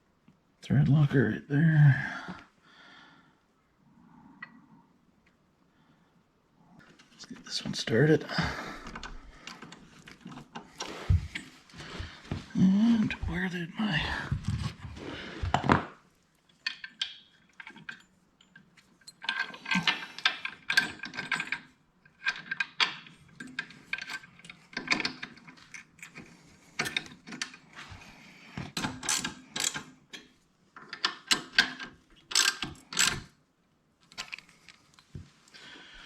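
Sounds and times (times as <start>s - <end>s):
socket ratchet clicking: 31.2s - 33.2s.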